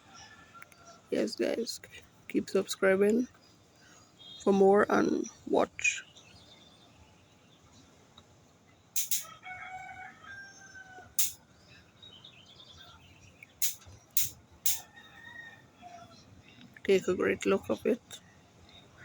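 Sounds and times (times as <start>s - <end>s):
short sharp clicks: 9.0s - 9.3s, 13.6s - 14.8s
rooster crowing: 9.2s - 11.4s, 14.7s - 16.2s.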